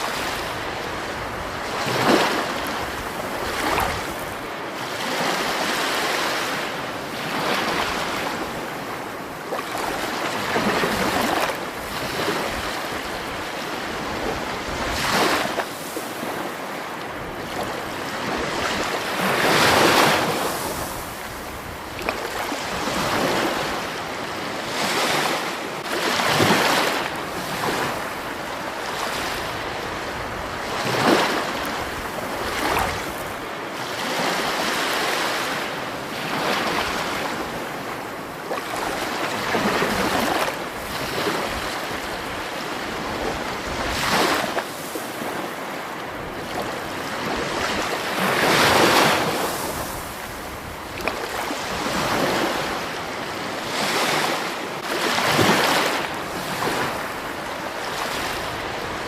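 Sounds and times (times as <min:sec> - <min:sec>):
rushing water roar: 0:00.0 - 0:59.0.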